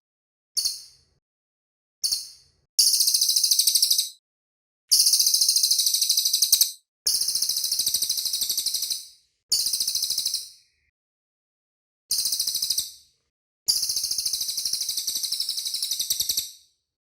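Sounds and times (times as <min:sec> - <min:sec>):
songbird trilling: 0:02.8 - 0:04.1, 0:04.9 - 0:06.8.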